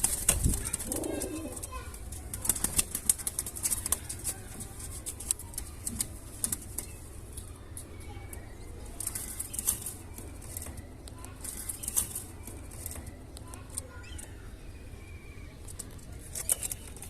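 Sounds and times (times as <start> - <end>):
pigeon wing flaps: 0.0 - 6.8.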